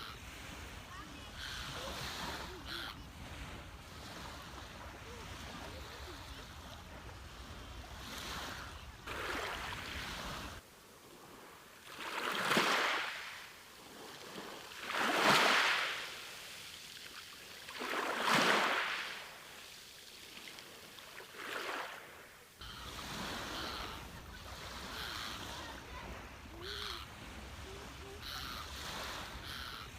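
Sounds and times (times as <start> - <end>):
sea waves washing onto beach: 0.0 - 29.9.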